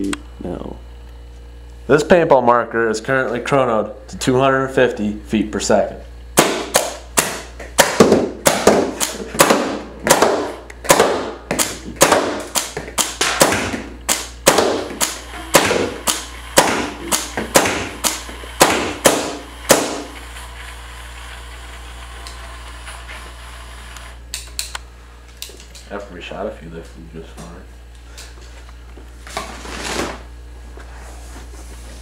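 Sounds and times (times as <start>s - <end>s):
steady low hum: 0.0s - 32.0s
paintball marker firing: 6.4s - 20.2s.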